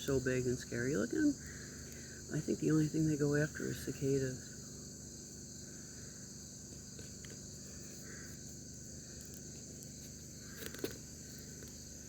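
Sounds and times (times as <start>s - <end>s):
high-pitched insect chorus: 0.0s - 12.0s.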